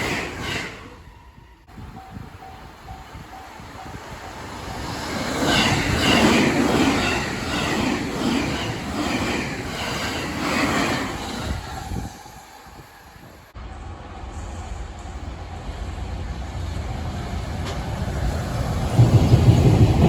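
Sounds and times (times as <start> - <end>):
train wheels clattering on rails: 1.6 - 12.0, 16.8 - 20.0
faint crossing warning bell: 1.8 - 5.1.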